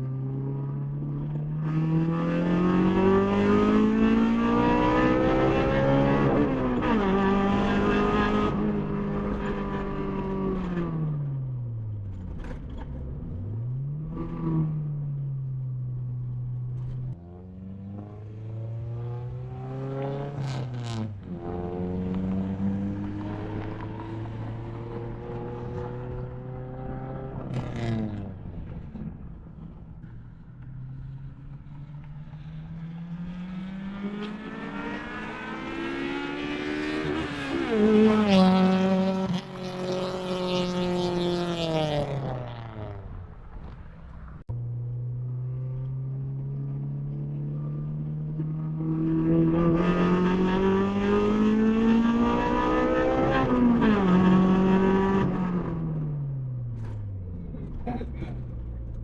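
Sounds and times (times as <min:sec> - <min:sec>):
car engine accelerating: 0:00.0 - 0:59.0.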